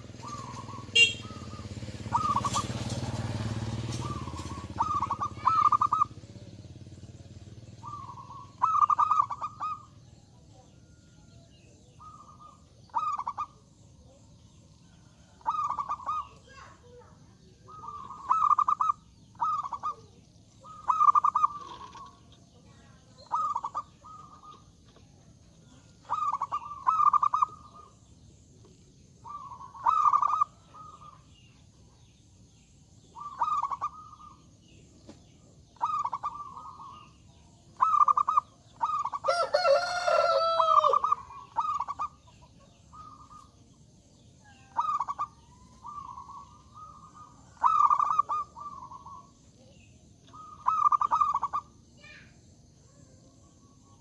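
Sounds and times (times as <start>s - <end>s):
dove cooing: 0.0s - 32.1s, 33.0s - 51.8s
drawn-out bird call: 0.0s - 54.0s.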